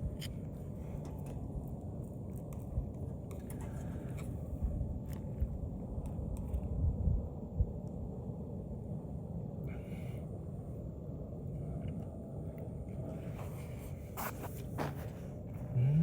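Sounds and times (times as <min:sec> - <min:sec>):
low background rumble: 0:00.0 - 0:16.0.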